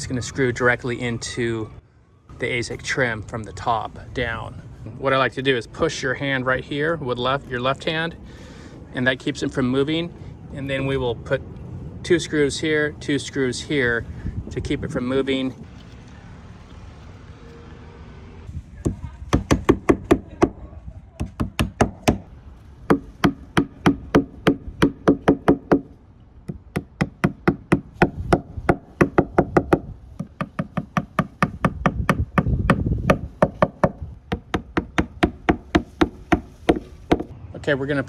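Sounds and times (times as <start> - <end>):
rapid sharp clicking knocks: 21.2 - 22.3, 22.9 - 25.9, 26.5 - 37.3.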